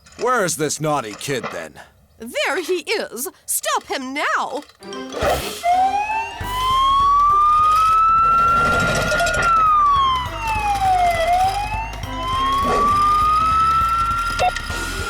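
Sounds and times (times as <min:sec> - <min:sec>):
siren wailing: 0:05.6 - 0:15.0.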